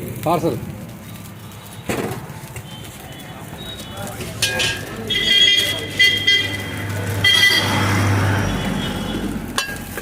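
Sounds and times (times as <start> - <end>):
motor vehicle passing: 5.7 - 10.0.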